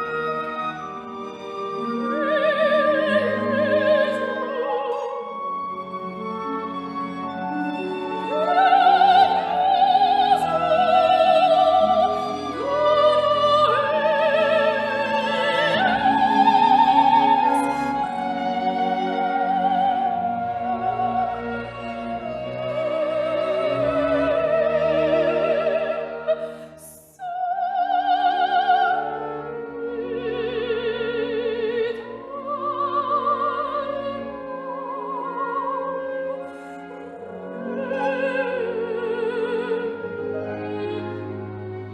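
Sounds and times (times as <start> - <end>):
orchestral accompaniment: 0.0 - 41.9
operatic high voice singing: 8.0 - 36.4.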